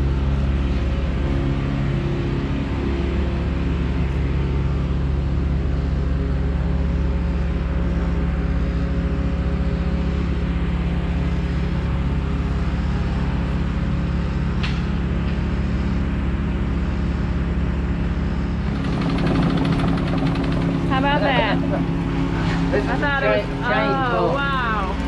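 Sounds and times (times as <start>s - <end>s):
machinery droning: 0.0s - 25.0s.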